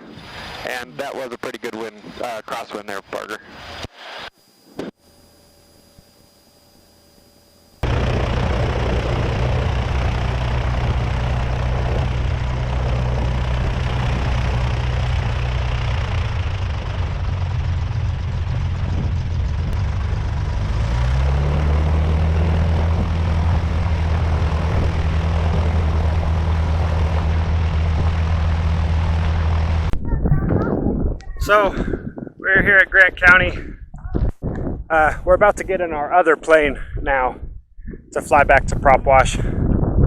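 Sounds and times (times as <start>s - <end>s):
propeller airplane engine running: 0.0s - 40.0s.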